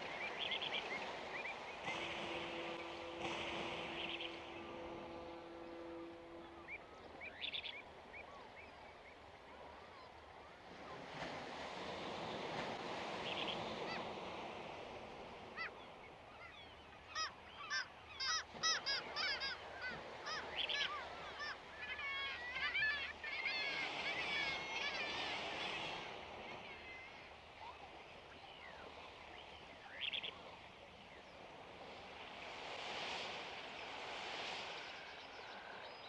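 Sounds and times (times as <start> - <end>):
birds squawking: 17.1 - 25.3.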